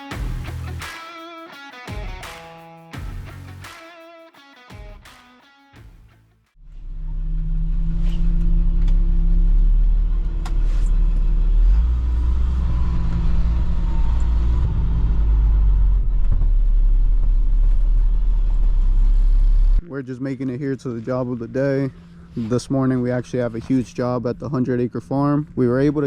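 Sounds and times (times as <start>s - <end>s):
vehicle engine and road rumble: 6.6s - 26.0s.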